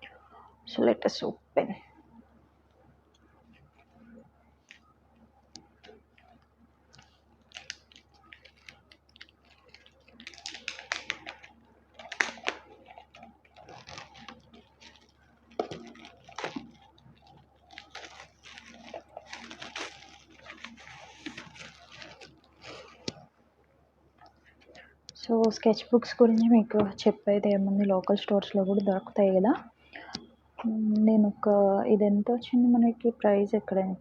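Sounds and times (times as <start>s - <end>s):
packaging crinkling and rustling: 3.4s - 23.3s.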